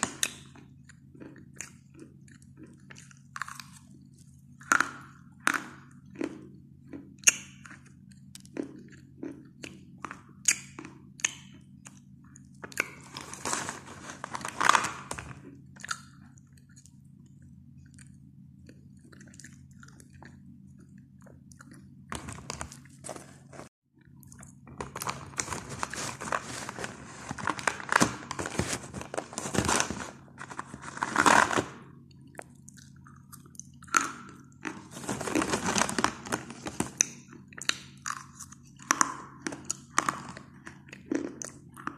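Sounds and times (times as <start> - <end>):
chewing chalk crunching: 0.0 - 23.3
steady low hum: 0.0 - 41.9.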